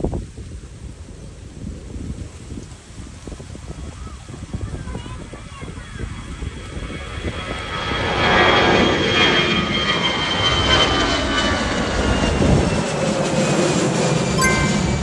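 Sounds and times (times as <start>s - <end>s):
jet engines roaring with high whine: 5.1s - 15.0s.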